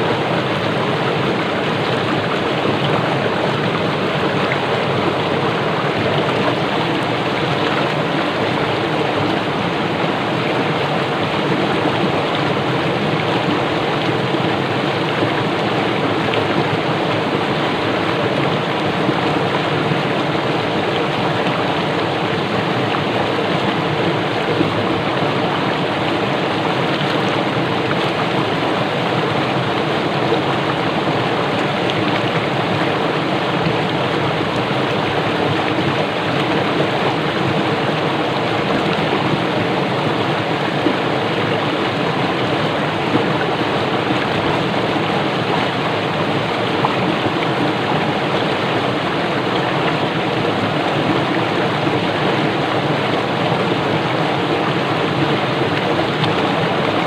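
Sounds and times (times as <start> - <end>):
stream rushing over rocks: 0.0 - 57.0.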